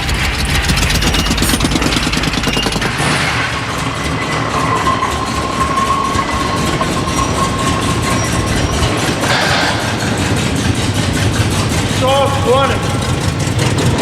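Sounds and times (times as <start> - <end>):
old car engine running rough: 0.0 - 14.0.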